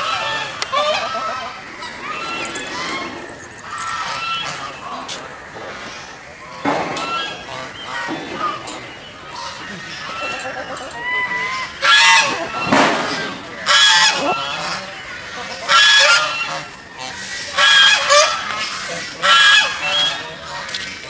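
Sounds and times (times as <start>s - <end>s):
geese honking: 0.0s - 21.0s.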